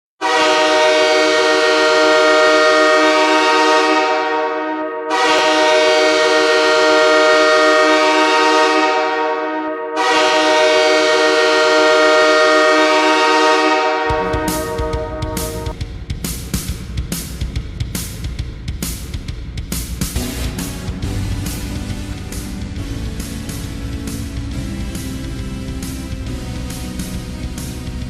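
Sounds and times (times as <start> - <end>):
goal horn blasts: 0.2 - 15.8.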